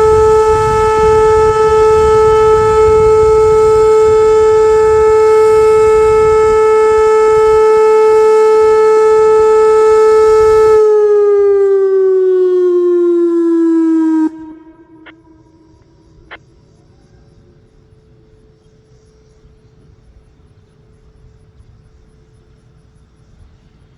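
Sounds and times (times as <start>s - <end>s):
electronic warning siren: 0.0s - 18.5s.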